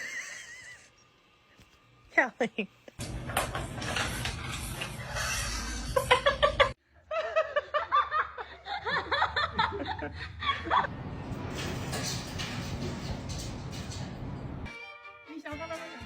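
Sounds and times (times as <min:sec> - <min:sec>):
people laughing: 0:00.0 - 0:00.9, 0:05.9 - 0:10.9.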